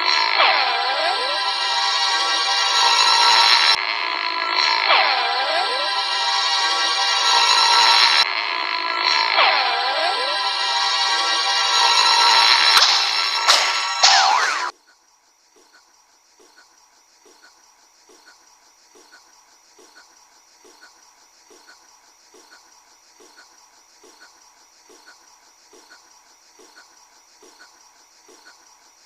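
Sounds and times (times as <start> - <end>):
crickets trilling: 0.0 - 13.5, 14.7 - 29.0
lower cricket chirp: 0.0 - 14.0, 14.7 - 29.0.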